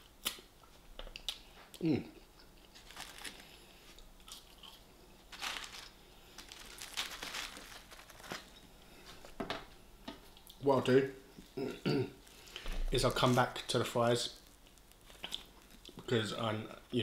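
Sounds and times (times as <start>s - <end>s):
person chewing food: 0.2s - 7.2s, 14.4s - 16.1s
soft food crunches: 2.5s - 9.4s, 14.0s - 16.1s
paper packaging crinkling: 2.8s - 3.6s, 5.3s - 9.4s, 12.2s - 15.8s.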